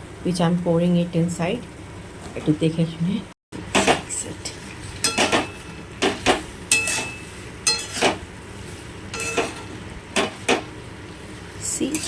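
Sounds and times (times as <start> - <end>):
utensil scraping a pan: 4.7 - 10.7, 11.8 - 12.0.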